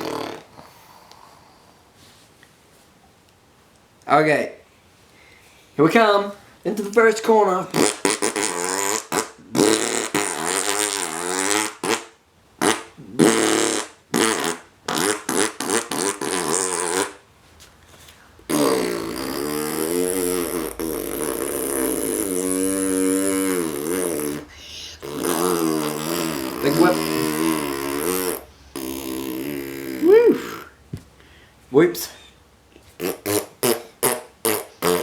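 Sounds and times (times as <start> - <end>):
voices imitating engine revving: 18.6 - 30.7.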